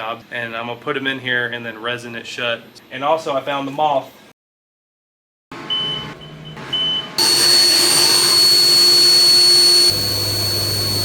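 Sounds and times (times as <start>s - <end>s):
short electronic beeps: 5.7s - 11.0s
electric machine whining: 7.2s - 11.0s.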